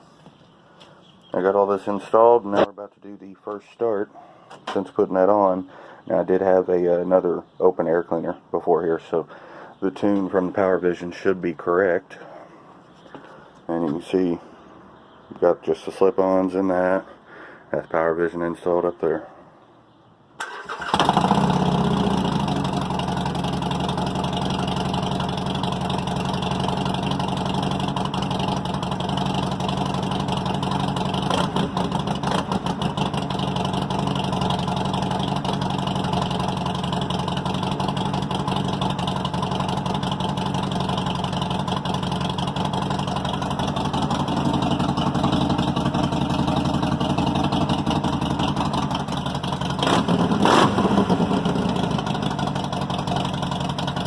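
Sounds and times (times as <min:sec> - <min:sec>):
motorcycle engine idling: 0:20.6 - 0:54.0.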